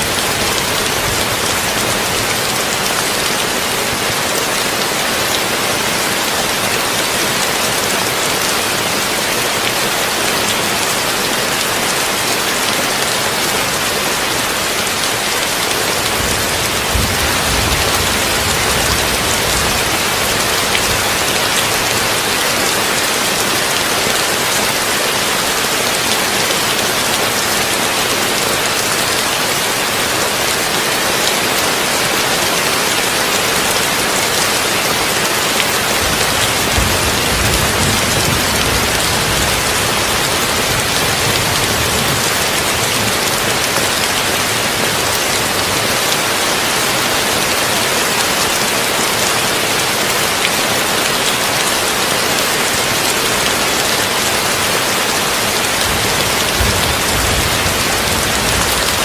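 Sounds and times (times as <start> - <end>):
heavy rain on a tin roof: 0.0 - 59.0
thunder rumbling: 16.0 - 21.9, 35.8 - 43.4, 55.8 - 59.0.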